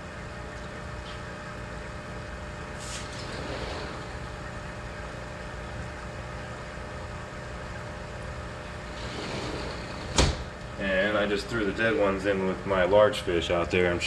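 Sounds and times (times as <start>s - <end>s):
faint steady hum: 0.0s - 14.0s
brief hiss: 2.8s - 3.2s.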